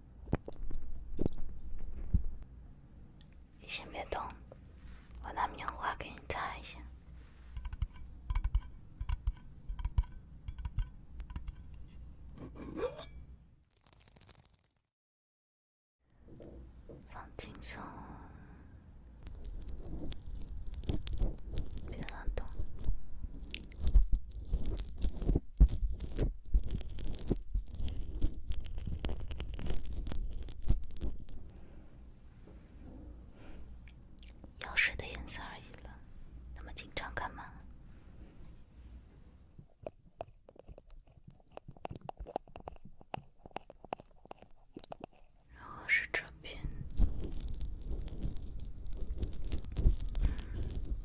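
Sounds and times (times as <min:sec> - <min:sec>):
crackling and scratching in ear: 0:00.2 - 0:02.4, 0:03.6 - 0:14.9, 0:19.2 - 0:31.6, 0:33.8 - 0:36.0, 0:36.6 - 0:37.7, 0:39.6 - 0:51.0.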